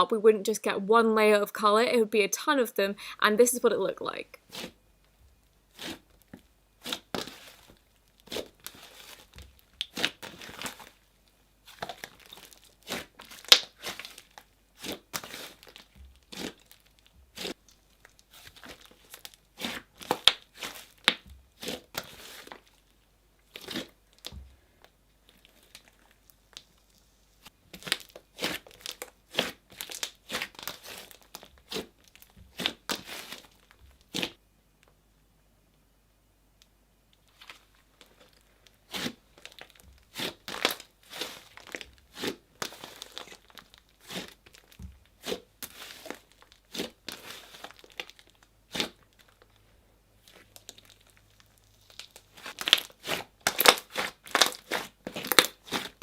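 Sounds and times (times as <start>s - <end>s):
slime squished by hand crackling: 5.7s - 11.0s, 11.6s - 22.9s, 25.2s - 34.4s, 37.2s - 49.5s, 50.2s - 56.0s.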